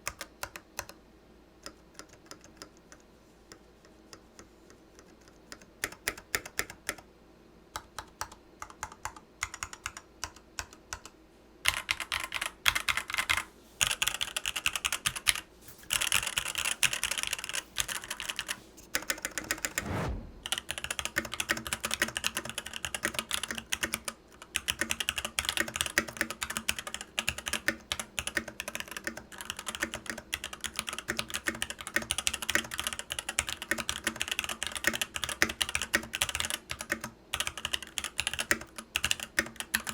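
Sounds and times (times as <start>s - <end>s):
keyboard typing: 11.7s - 19.8s
low thud: 19.7s - 20.6s.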